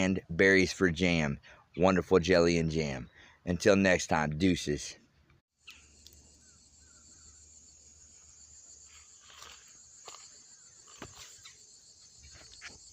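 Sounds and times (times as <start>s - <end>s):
high-pitched insect chorus: 5.6s - 12.9s.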